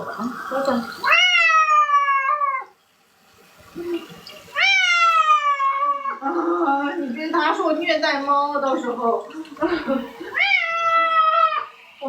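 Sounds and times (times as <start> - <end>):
cat meowing: 1.0 - 2.7, 4.6 - 6.2, 10.4 - 11.7.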